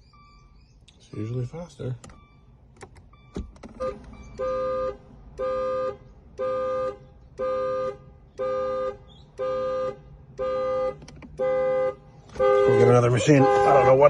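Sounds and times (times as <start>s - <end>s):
car horn alarm honking: 3.1s - 14.0s.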